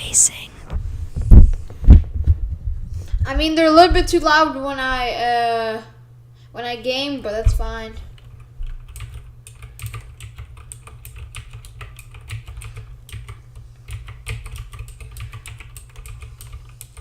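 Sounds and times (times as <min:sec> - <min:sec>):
keyboard keys clicking rapidly: 0:08.2 - 0:17.0.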